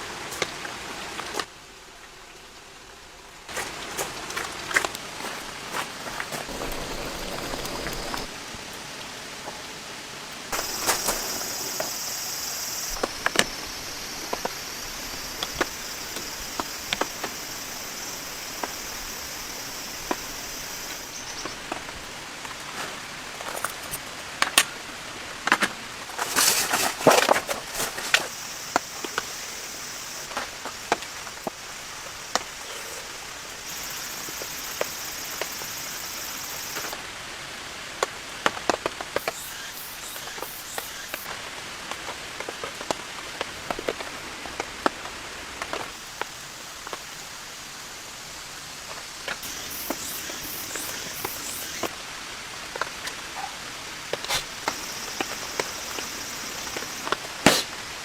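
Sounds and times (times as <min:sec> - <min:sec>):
steady rain: 0:00.0 - 0:58.0
high even hiss: 0:06.3 - 0:09.0, 0:10.5 - 0:24.0, 0:26.3 - 0:37.0, 0:39.2 - 0:41.3, 0:45.7 - 0:52.0, 0:52.9 - 0:58.0.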